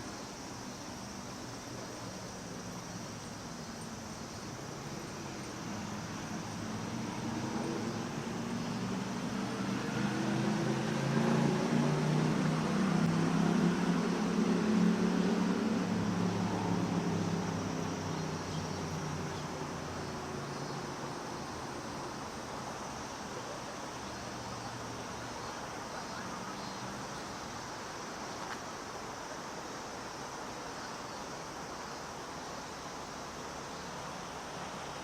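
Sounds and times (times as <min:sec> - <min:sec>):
cicadas buzzing: 0:00.0 - 0:35.0
engine passing by: 0:06.1 - 0:21.1.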